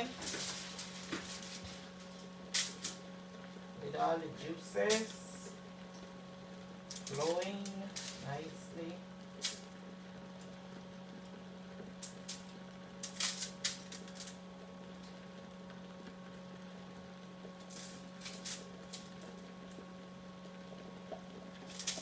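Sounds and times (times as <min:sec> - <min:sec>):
foil crinkles and clicks: 0:00.0 - 0:03.1, 0:06.9 - 0:08.6, 0:12.0 - 0:14.4, 0:17.6 - 0:19.8, 0:21.1 - 0:22.0
electrical hum: 0:00.0 - 0:22.0.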